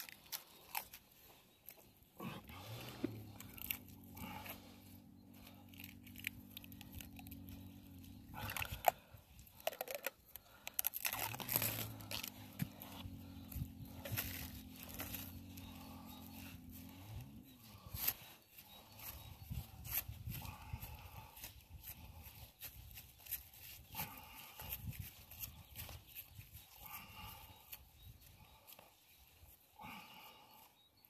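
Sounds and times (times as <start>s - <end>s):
crinkling and tearing handling noise: 0.0s - 16.1s
steady low hum: 2.2s - 9.7s, 10.4s - 22.3s.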